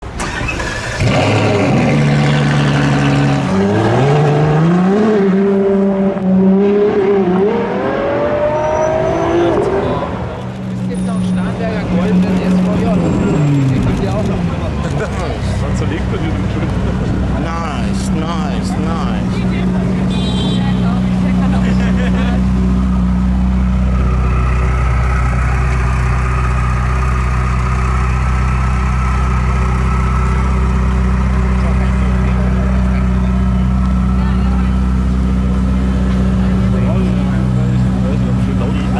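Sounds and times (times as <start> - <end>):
car engine running under load: 9.6 - 38.9.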